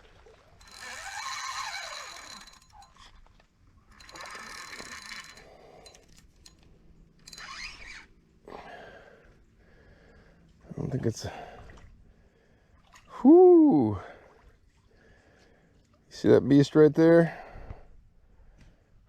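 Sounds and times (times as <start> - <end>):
fishing reel whirring and clicking: 0.5 - 8.2.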